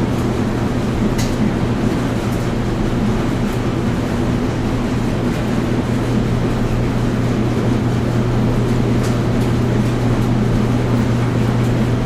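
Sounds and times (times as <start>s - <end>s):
washing machine and dryer running: 0.0s - 12.0s.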